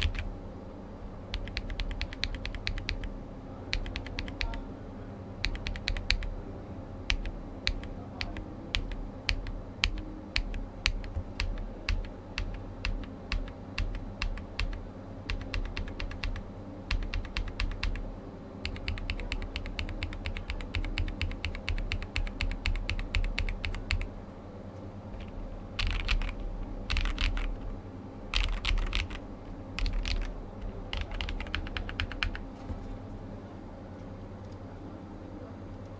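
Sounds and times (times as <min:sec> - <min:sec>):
mechanical keyboard typing: 0:00.0 - 0:00.3, 0:01.3 - 0:03.1, 0:03.7 - 0:04.6, 0:05.4 - 0:06.3, 0:07.1 - 0:18.0, 0:18.6 - 0:24.1, 0:25.2 - 0:27.6, 0:28.3 - 0:29.2, 0:29.8 - 0:32.5.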